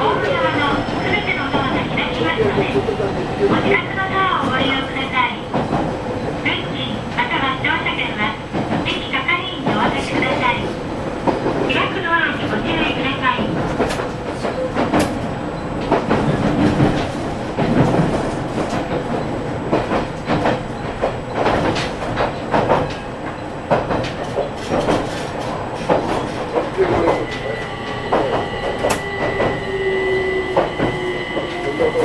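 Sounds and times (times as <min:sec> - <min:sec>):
wheel and rail rumble: 0:00.0 - 0:32.0.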